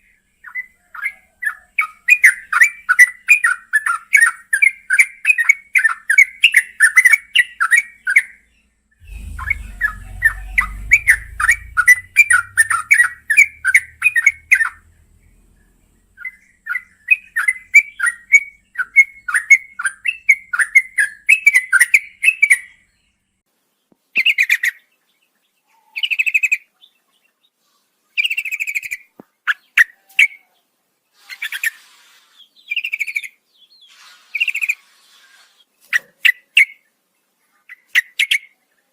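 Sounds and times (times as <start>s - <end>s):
bird chattering song: 0.4s - 23.0s
faint low rumble: 8.6s - 18.8s.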